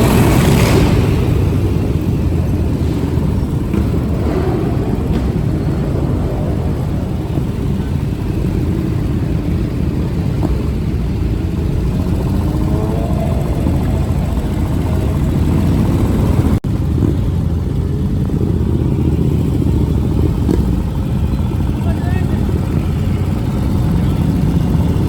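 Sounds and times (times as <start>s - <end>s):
motorcycle engine revving: 0.0s - 25.0s
motorcycle engines at low speed: 0.0s - 25.0s.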